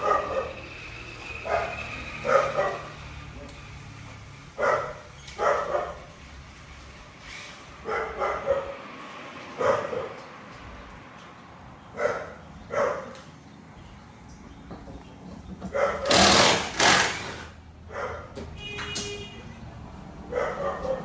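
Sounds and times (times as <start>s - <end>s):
dog barking: 0.0s - 0.7s, 1.4s - 3.0s, 4.6s - 6.0s, 7.8s - 8.8s, 9.6s - 10.3s, 11.9s - 13.2s, 15.7s - 16.1s, 17.9s - 18.4s, 20.2s - 21.0s.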